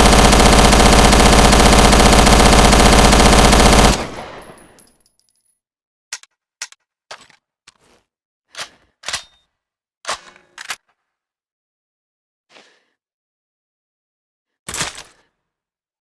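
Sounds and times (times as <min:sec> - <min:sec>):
submachine gun burst: 0:00.0 - 0:04.8.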